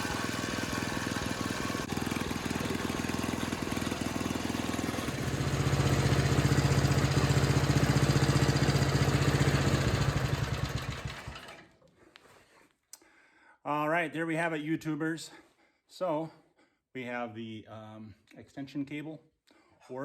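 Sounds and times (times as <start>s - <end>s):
snowblower engine running: 0.0s - 11.6s.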